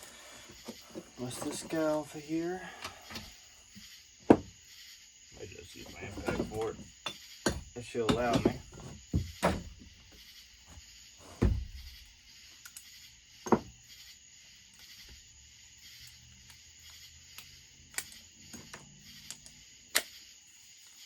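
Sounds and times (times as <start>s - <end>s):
dull thump: 4.2s - 4.6s, 6.0s - 10.0s, 11.2s - 12.0s
tools knocking on workbench: 4.3s - 4.5s, 6.1s - 9.8s, 11.4s - 11.8s, 13.4s - 13.7s.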